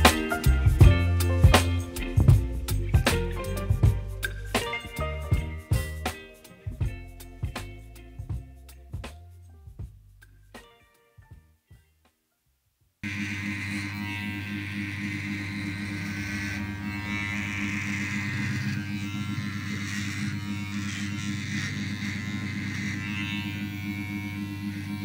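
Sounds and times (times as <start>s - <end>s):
electric hair trimmer buzzing: 0.0s - 2.4s, 13.0s - 25.0s
trimmer rasping through hair: 13.0s - 25.0s.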